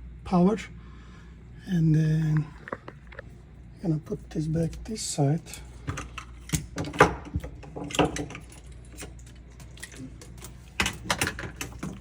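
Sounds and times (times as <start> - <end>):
wiring clicks and rattles: 2.2 - 3.4.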